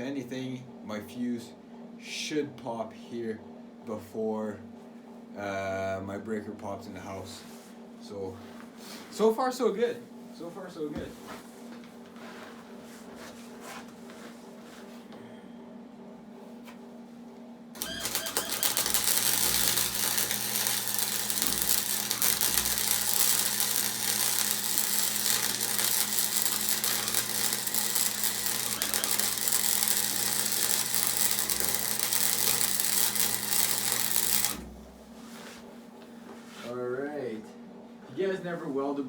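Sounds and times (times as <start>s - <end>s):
welder arc crackling: 17.8s - 35.0s.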